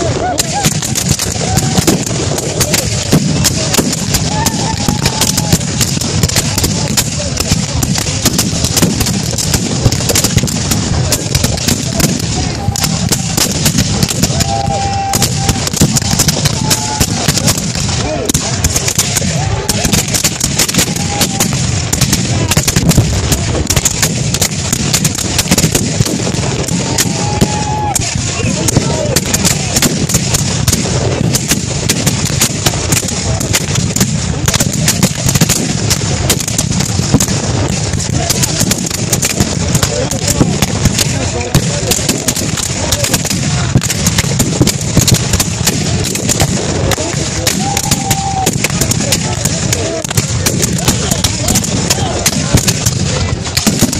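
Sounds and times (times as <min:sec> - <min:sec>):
men shouting: 0:00.0 - 0:06.9, 0:12.2 - 0:21.8, 0:26.5 - 0:29.7, 0:47.3 - 0:50.1
continuous din: 0:00.0 - 0:53.9
muskets firing: 0:00.0 - 0:53.9
rifle shots: 0:00.0 - 0:53.9.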